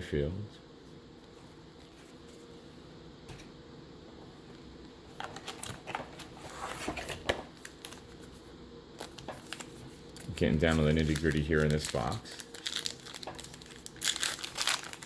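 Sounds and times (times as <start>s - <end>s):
trading cards clicking and rustling: 9.0s - 15.0s.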